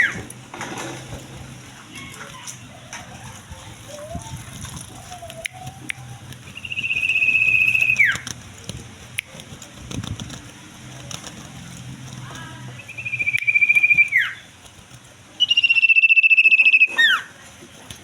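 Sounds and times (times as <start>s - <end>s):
bird singing rapid trills: 6.5s - 8.2s, 12.8s - 14.5s, 15.4s - 17.3s.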